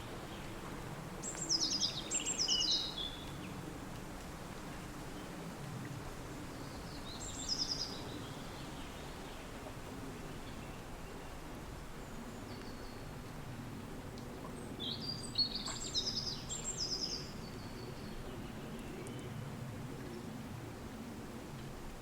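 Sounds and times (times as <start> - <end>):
songbird singing: 1.2 - 3.5, 14.6 - 19.4.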